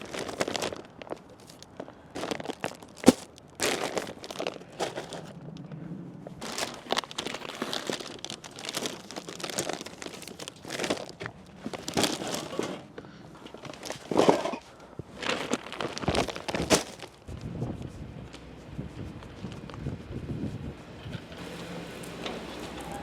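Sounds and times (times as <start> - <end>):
packaging crinkling and rustling: 0.0 - 5.4, 6.4 - 17.3.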